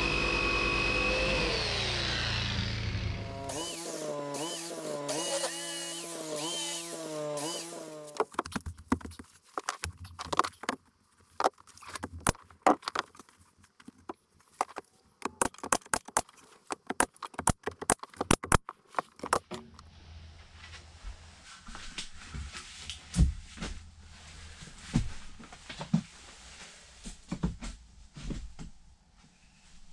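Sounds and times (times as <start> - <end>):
sharp irregular clicks and knocks: 13.8 - 19.8.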